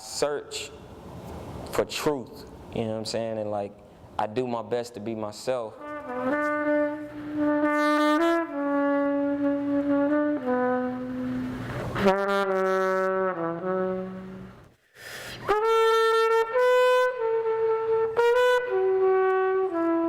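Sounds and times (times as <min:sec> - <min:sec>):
trumpet playing long held notes: 0:05.7 - 0:14.7, 0:15.4 - 0:20.0.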